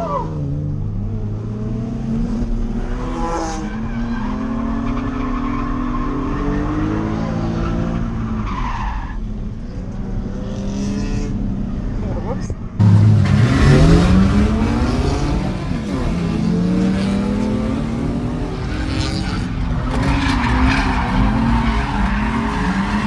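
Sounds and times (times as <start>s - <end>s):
car engine at high revs: 12.8s - 23.0s
tyre squeals: 12.8s - 23.0s
tyres skidding: 12.8s - 23.0s.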